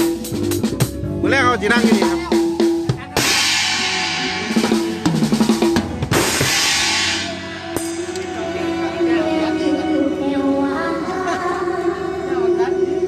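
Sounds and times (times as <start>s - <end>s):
band music with drum kit: 0.0s - 9.9s
cymbal crashes: 3.2s - 8.9s.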